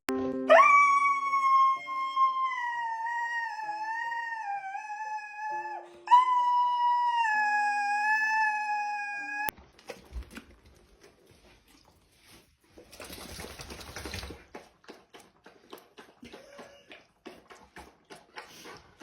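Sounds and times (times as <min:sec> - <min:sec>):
dog howling: 0:00.5 - 0:09.5.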